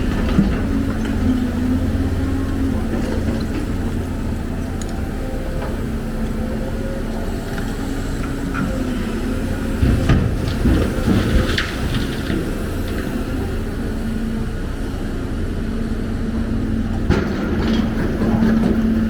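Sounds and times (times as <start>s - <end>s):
diesel engine humming: 0.0s - 19.0s
low knocks and rumbling: 9.6s - 12.5s.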